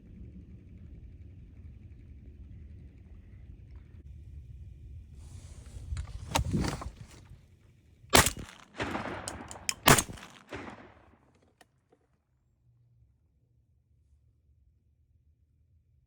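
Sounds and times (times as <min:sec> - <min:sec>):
shotgun shots with echo: 0:08.2 - 0:11.1.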